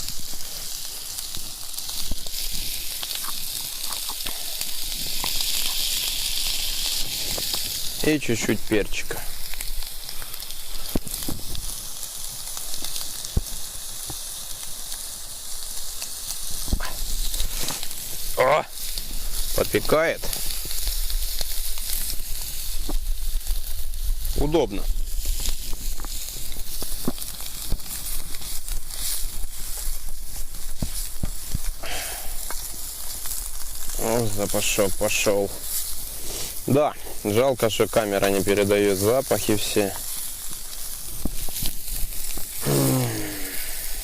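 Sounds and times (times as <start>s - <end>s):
food sizzling in a frying pan: 0.0s - 44.0s
sharp pops and crackles: 0.0s - 44.0s.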